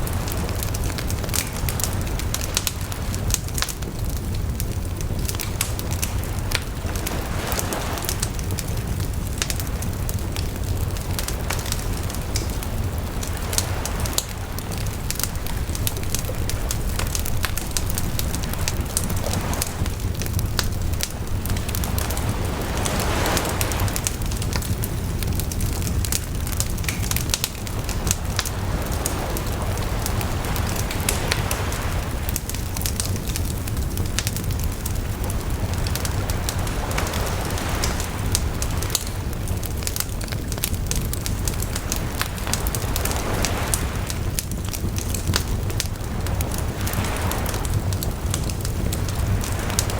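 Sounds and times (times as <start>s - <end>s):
campfire crackling: 0.0s - 49.9s
ocean waves washing ashore: 0.0s - 49.9s
low rumble: 4.2s - 38.7s.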